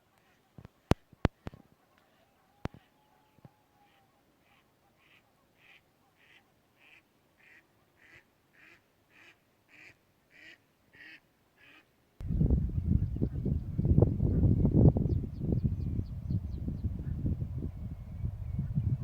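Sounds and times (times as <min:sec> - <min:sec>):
duck-like bird calling: 0:03.8 - 0:11.9.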